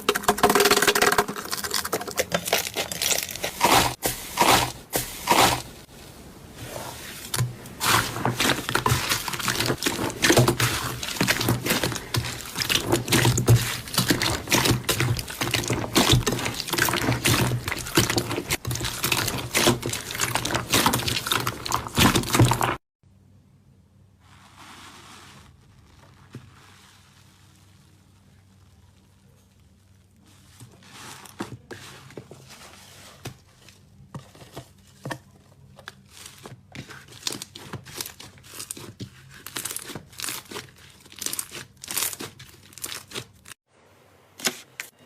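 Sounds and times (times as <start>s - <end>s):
slime crackling and popping: 0.0s - 4.7s, 7.8s - 22.8s, 37.2s - 43.5s.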